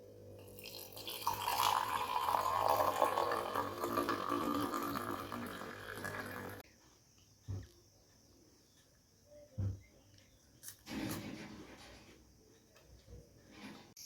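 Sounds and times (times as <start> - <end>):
liquid pouring: 0.4 - 6.6.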